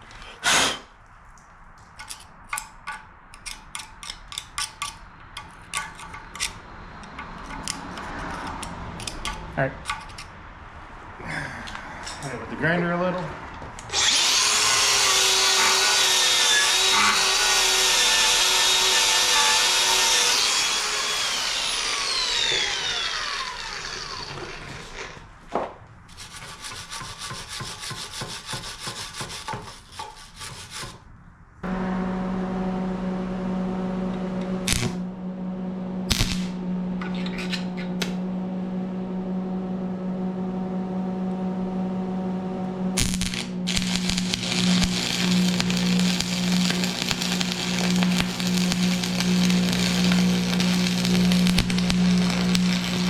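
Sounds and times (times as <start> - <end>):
grinder grinding on steel: 3.4 - 10.3, 13.8 - 25.3, 31.6 - 53.0
steady low hum: 31.5 - 53.0.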